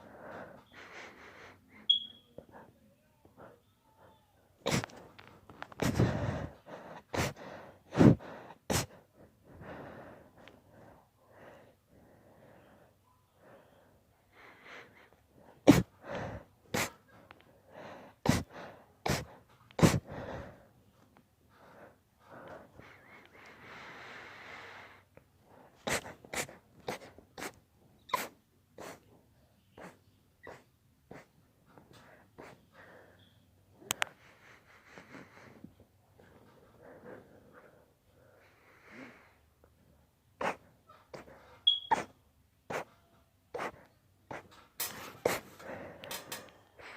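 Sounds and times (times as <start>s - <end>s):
breathing and gasps: 0.0s - 1.9s, 4.7s - 20.8s, 21.5s - 27.6s, 31.9s - 39.5s, 43.6s - 46.9s.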